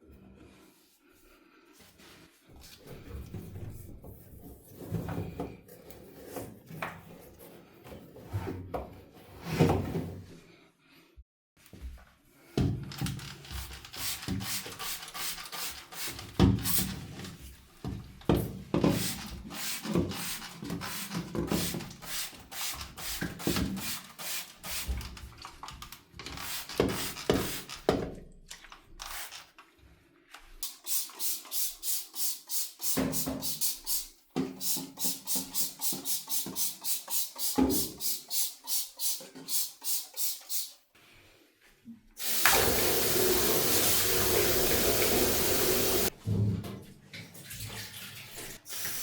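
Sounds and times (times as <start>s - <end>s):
scrubbing a bathtub: 44.4s - 49.0s.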